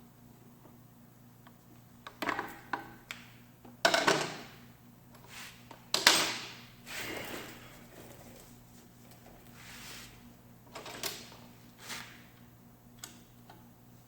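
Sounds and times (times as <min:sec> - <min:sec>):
scrape or rattle: 0:06.9 - 0:08.5.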